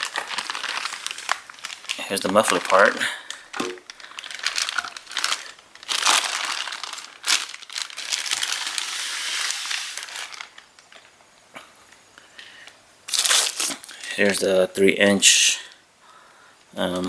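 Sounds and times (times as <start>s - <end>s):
plastic bags crinkling: 0.0s - 11.2s, 13.1s - 14.5s.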